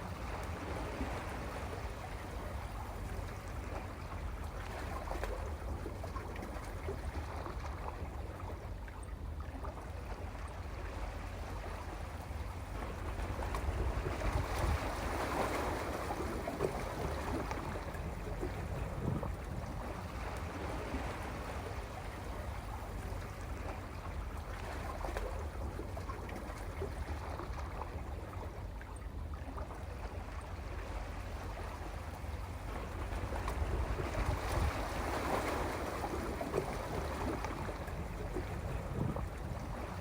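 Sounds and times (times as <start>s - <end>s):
sea waves on rocky shore: 13.0s - 26.6s, 31.6s - 40.0s.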